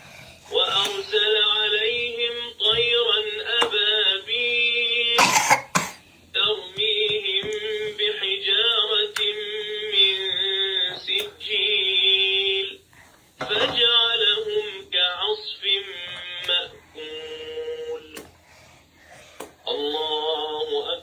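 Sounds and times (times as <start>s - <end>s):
person chanting on steady pitch: 0.4s - 5.6s, 6.3s - 18.4s, 19.4s - 21.0s
person coughing: 5.2s - 6.0s.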